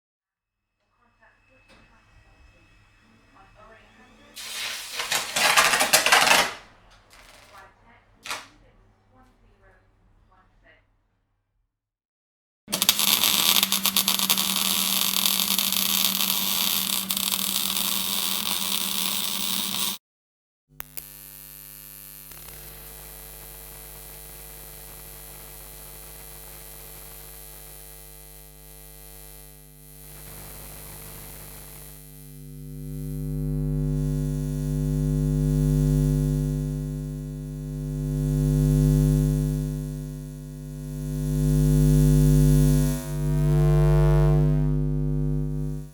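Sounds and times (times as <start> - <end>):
electrical mains hum: 1.2 - 10.4, 20.8 - 45.9
electrical crackling buzz: 4.3 - 8.6, 12.7 - 20.0, 20.8 - 45.9.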